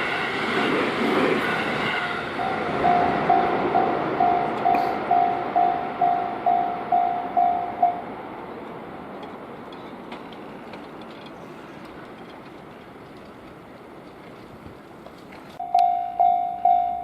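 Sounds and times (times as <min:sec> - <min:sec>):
train rumbling past: 0:00.0 - 0:17.0
level crossing warning bell: 0:02.4 - 0:08.1, 0:15.6 - 0:17.0.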